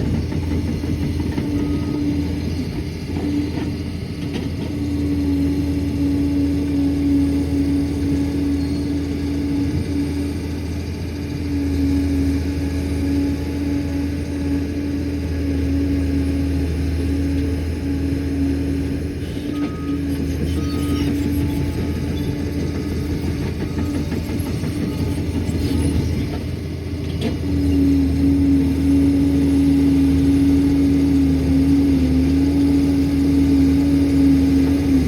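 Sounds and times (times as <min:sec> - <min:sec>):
dozer diesel engine droning: 0:00.0 - 0:35.0
short high beeps: 0:19.4 - 0:22.1.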